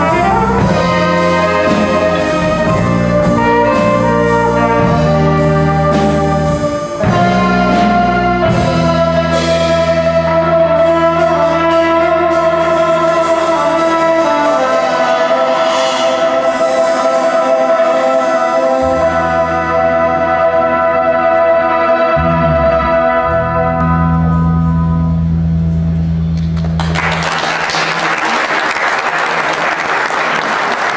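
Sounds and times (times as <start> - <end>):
jazz combo playing live: 0.0 - 29.0
audience applause: 26.5 - 30.9.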